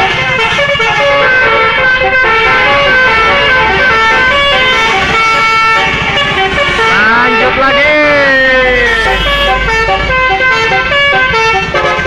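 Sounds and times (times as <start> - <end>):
bus horn playing tune: 0.0 - 12.0
low rumble: 1.0 - 10.6.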